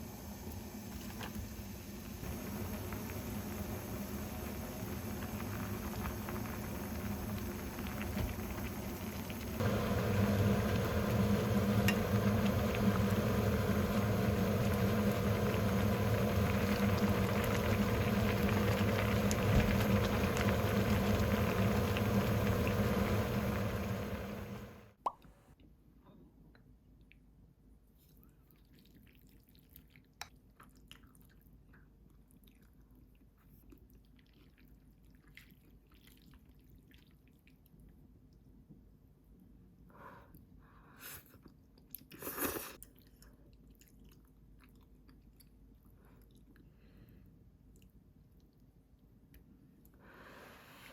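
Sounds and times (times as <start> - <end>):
kitchen appliance humming: 0.0 - 24.9
small ticks and drips: 28.0 - 38.5, 42.8 - 47.0, 47.7 - 50.0.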